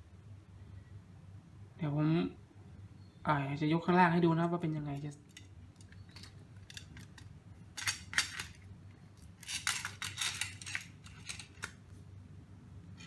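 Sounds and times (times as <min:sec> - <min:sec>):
metallic clinking of toy truck handling: 0:05.0 - 0:11.8.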